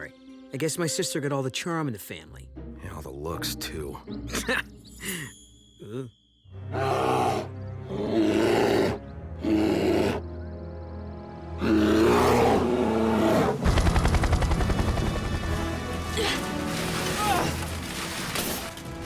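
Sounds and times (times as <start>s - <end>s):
bear roaring: 6.7s - 10.3s, 11.6s - 13.7s.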